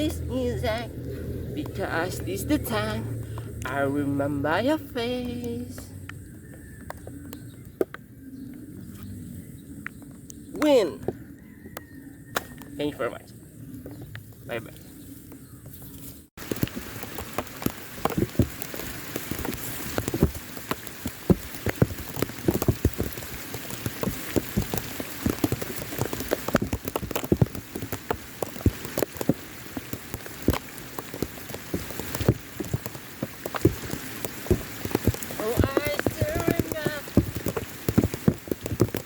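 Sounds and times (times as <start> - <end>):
close raindrop impacts: 0.0 - 7.9, 16.4 - 39.0
rain falling steadily: 0.0 - 7.9, 16.4 - 39.0.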